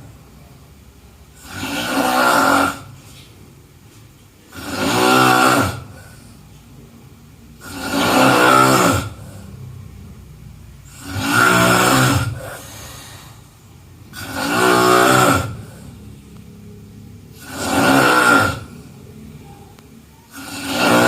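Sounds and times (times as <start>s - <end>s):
person snoring: 1.4s - 3.0s, 4.5s - 6.4s, 7.6s - 9.6s, 10.8s - 13.5s, 14.1s - 16.0s, 17.3s - 19.0s, 20.3s - 21.0s
quiet breathing: 5.8s - 7.8s, 9.0s - 11.7s, 12.3s - 14.8s, 15.4s - 17.6s.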